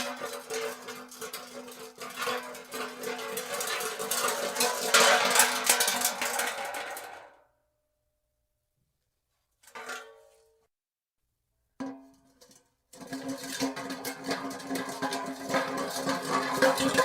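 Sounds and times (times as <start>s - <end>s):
metal hubcap spinning on concrete: 0.0s - 7.4s, 11.8s - 17.0s.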